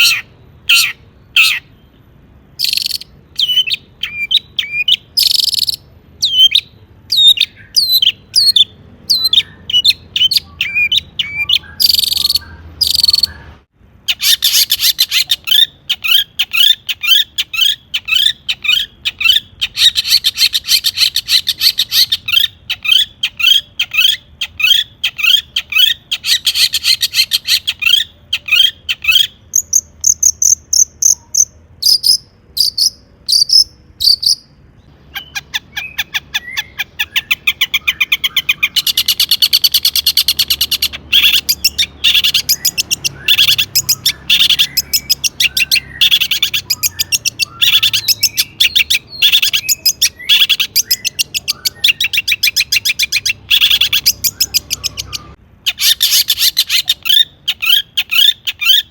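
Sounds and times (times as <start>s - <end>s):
bird sharp repeated chirps: 0.0s - 58.9s
higher whistled bird notes: 35.1s - 58.8s.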